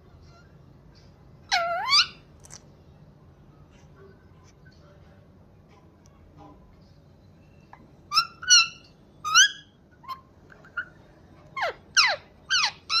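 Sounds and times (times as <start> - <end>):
parrot squawking: 1.4 - 2.3, 8.1 - 11.0, 11.6 - 13.0.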